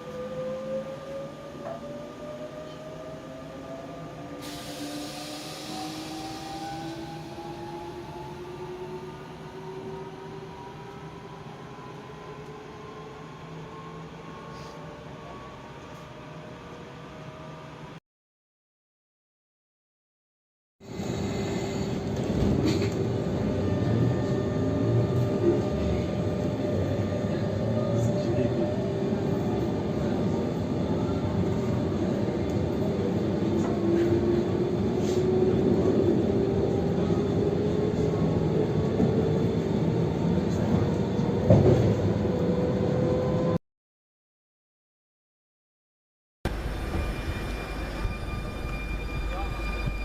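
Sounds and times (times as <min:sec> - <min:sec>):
train running noise: 0:46.5 - 0:50.0.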